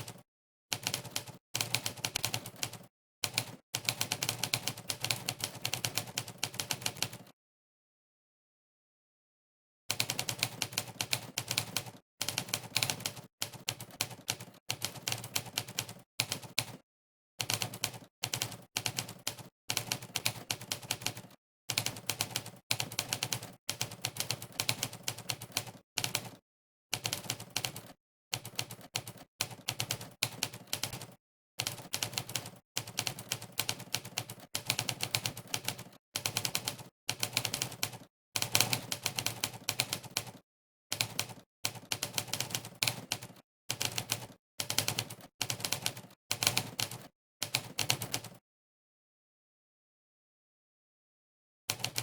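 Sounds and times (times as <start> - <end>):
synthesized typewriter keystrokes: 51.7 - 52.0.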